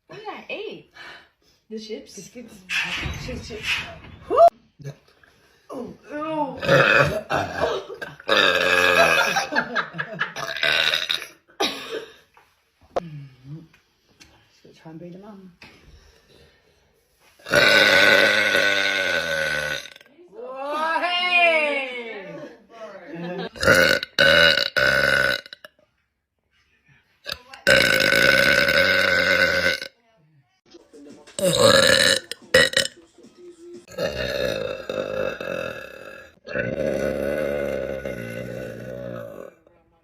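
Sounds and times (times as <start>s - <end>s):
woman burping: 6.6s - 9.6s, 10.4s - 12.1s, 17.4s - 20.1s, 23.5s - 25.7s, 27.3s - 30.0s, 31.4s - 32.9s, 33.9s - 39.6s.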